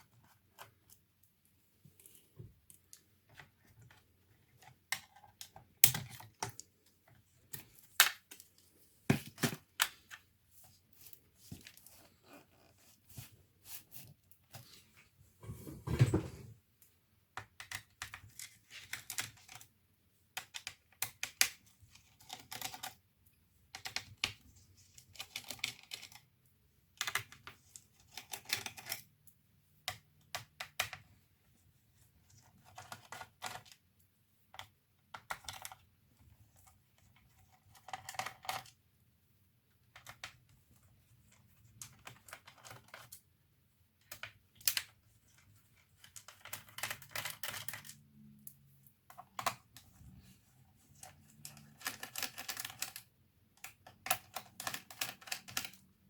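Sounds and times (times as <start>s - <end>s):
laptop parts clicking and rattling: 2.0s - 10.2s, 17.4s - 23.0s, 23.7s - 26.3s, 26.9s - 29.2s, 32.3s - 33.9s, 34.5s - 35.9s, 36.5s - 38.8s, 39.8s - 40.5s, 41.2s - 43.3s, 44.0s - 48.1s, 49.0s - 50.0s, 50.9s - 56.0s.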